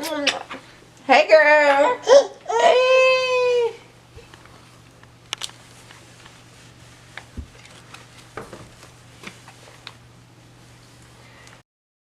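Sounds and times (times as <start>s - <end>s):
faint steady hum: 0.0s - 11.6s.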